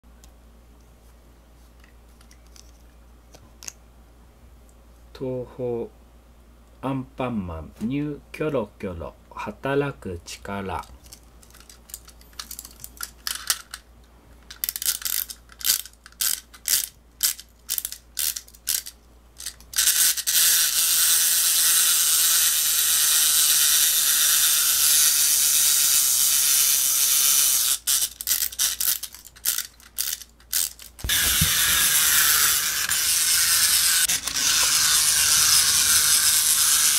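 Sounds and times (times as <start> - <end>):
toy gear whirring rattle: 11.0 - 13.8, 14.4 - 36.9
toy ratcheting clicks: 11.1 - 13.8, 14.5 - 36.9.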